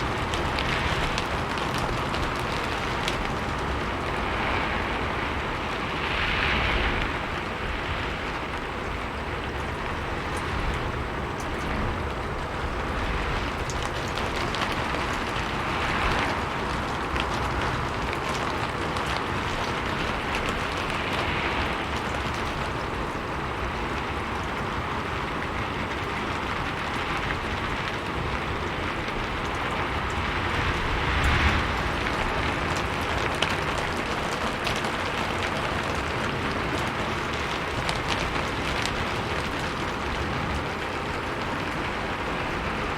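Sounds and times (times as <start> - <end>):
rain falling on a roof: 0.0 - 42.9.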